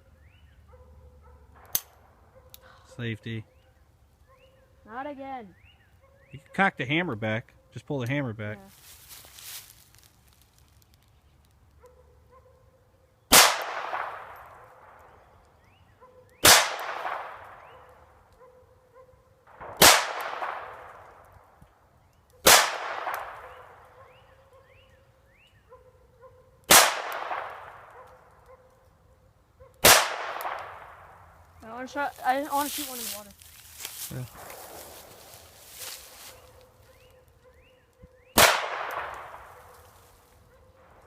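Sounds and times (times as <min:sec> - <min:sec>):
handgun shots with echo: 0:16.4 - 0:17.7, 0:22.5 - 0:23.5, 0:26.7 - 0:27.9, 0:29.8 - 0:30.8, 0:38.4 - 0:39.5.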